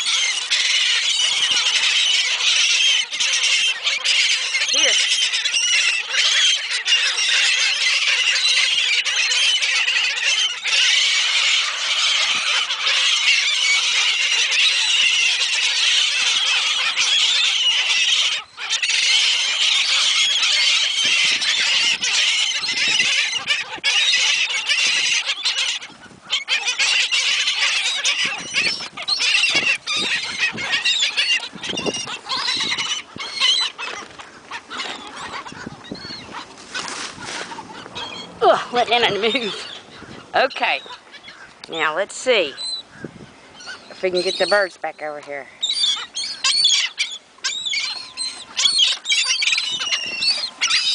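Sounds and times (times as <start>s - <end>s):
seagulls squealing: 0.0s - 50.9s.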